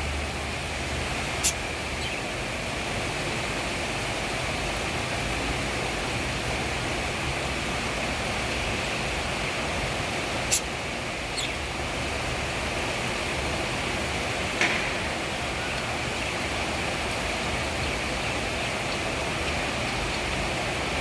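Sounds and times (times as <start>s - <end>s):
heavy rain hissing: 0.0s - 21.0s.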